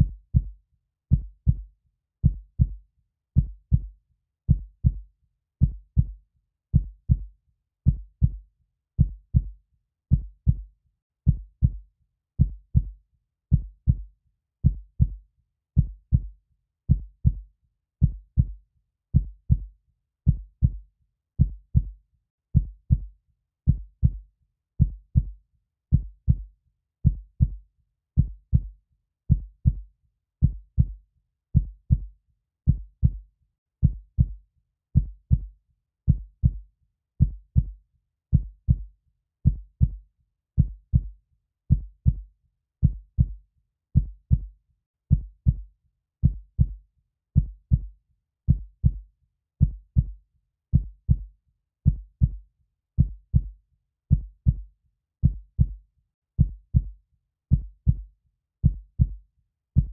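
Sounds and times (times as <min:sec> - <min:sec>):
heartbeat double thumps: 0:03.4 - 0:03.9, 0:14.6 - 0:15.2, 0:25.9 - 0:26.4, 0:30.4 - 0:31.0, 0:31.6 - 0:32.1, 0:32.7 - 0:33.2, 0:33.8 - 0:34.4, 0:35.0 - 0:35.5, 0:36.1 - 0:36.6, 0:37.2 - 0:37.8, 0:38.4 - 0:38.9, 0:39.5 - 0:40.0, 0:40.6 - 0:41.1, 0:41.7 - 0:42.2, 0:42.8 - 0:43.4, 0:44.0 - 0:44.5, 0:45.1 - 0:45.6, 0:46.2 - 0:46.8, 0:47.4 - 0:47.9, 0:48.5 - 0:49.0, 0:49.6 - 0:50.2, 0:50.8 - 0:51.3, 0:51.9 - 0:52.4, 0:53.0 - 0:53.5, 0:54.1 - 0:55.8, 0:56.4 - 0:56.9, 0:57.5 - 0:59.2.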